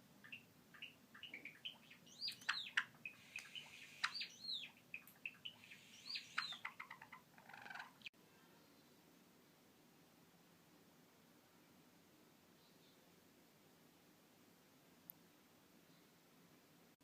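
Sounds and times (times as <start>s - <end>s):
sparrow singing: 0.2s - 8.1s.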